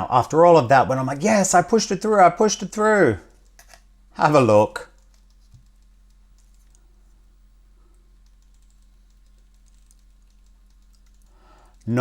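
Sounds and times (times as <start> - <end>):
low electrical hum: 0.0 - 12.0
light clicks and ticks: 4.8 - 6.9, 7.9 - 12.0.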